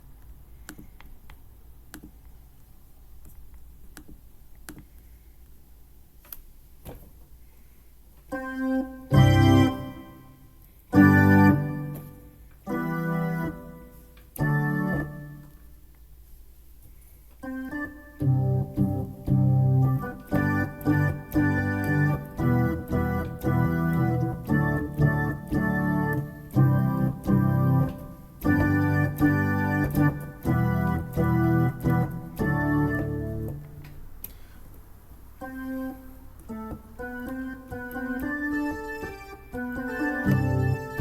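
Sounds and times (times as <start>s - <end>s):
electronic keyboard chords: 8.3s - 15.8s, 17.4s - 34.1s, 35.4s - 41.0s.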